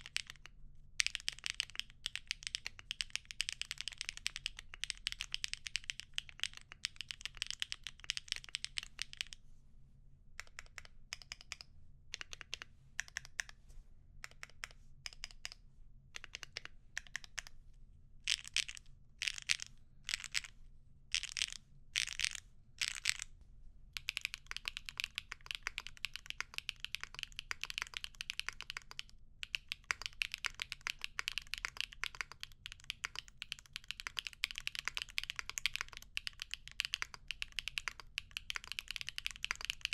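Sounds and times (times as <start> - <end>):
typing on mechanical keyboard: 0.0 - 9.4, 10.4 - 13.6, 14.2 - 15.6, 16.2 - 17.5, 18.3 - 20.5, 21.1 - 23.3, 24.0 - 39.9.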